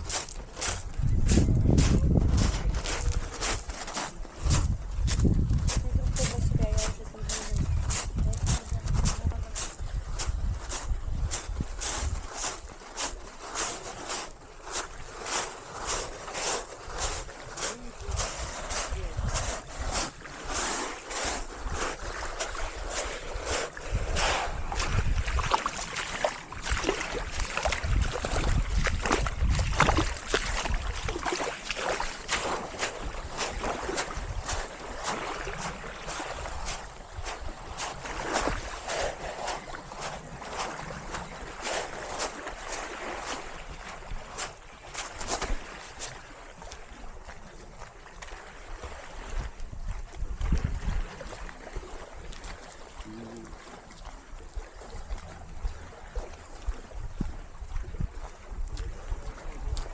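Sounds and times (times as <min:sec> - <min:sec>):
wind buffeting microphone: 0:00.0 - 0:45.8, 0:48.7 - 0:52.5, 0:54.5 - 0:59.9
footsteps walking: 0:00.0 - 0:46.1.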